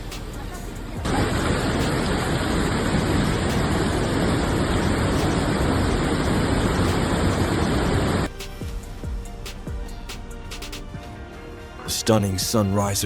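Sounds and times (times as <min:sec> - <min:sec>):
floodwater rushing: 0:01.0 - 0:08.3
heavy rain: 0:01.0 - 0:08.3.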